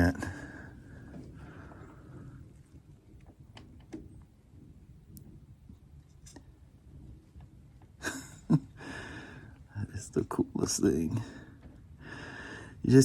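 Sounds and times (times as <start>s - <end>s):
faint clicks and handling noises: 1.1s - 4.3s.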